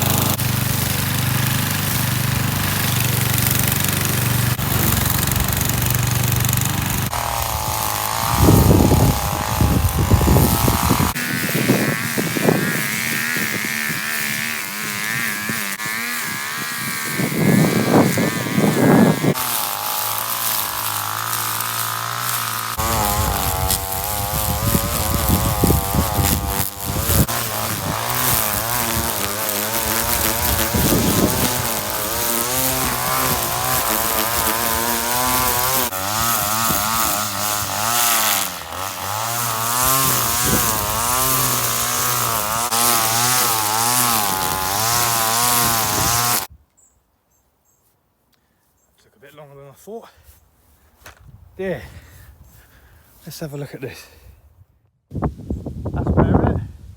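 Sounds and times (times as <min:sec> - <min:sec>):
strimmer cutting grass: 0:00.0 - 0:46.5.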